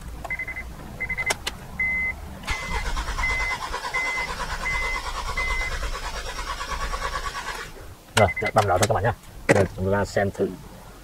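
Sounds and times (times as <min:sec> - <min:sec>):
starter motor cranking engine: 0:02.5 - 0:07.8.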